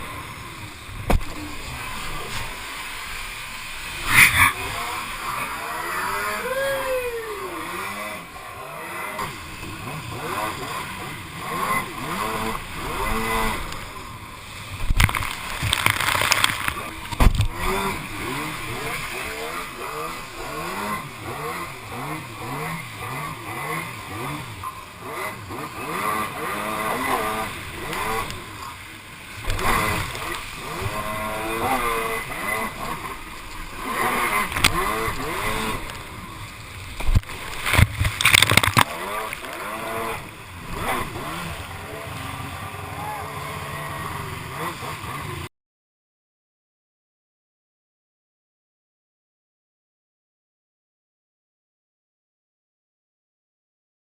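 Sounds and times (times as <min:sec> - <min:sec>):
jet ski engine revving: 0:00.0 - 0:45.5
sharp thumps: 0:01.0 - 0:01.6.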